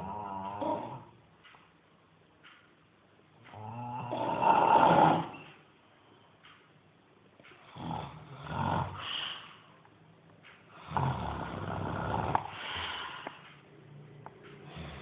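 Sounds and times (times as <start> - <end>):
snoring breaths: 3.5 - 5.4, 7.6 - 9.7, 10.7 - 13.6, 14.6 - 15.0.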